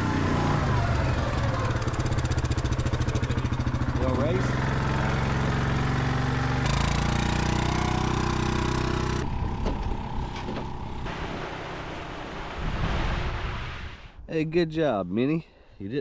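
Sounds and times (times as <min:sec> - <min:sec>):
atv engine running: 0:00.0 - 0:11.5.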